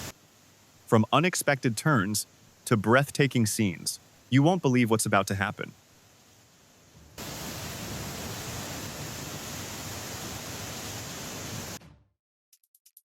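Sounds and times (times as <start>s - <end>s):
steady rushing noise: 0.0s - 11.8s.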